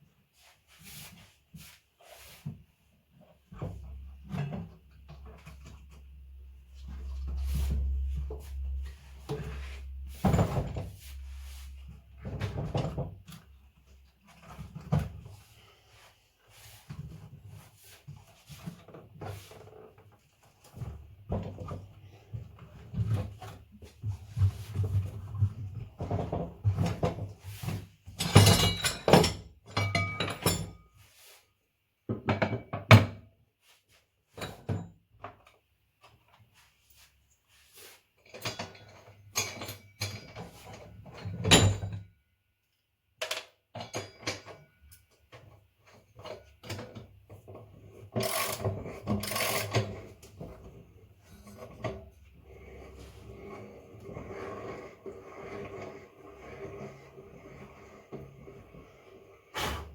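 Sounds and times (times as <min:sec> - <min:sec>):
tools clattering: 0:28.1 - 0:30.9.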